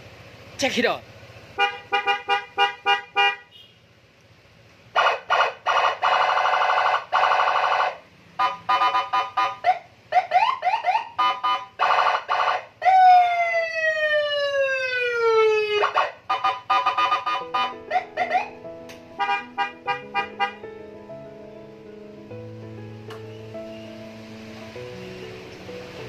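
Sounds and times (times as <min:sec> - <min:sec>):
electronic siren: 0:05.0 - 0:18.6
siren wail sliding down: 0:11.8 - 0:16.1.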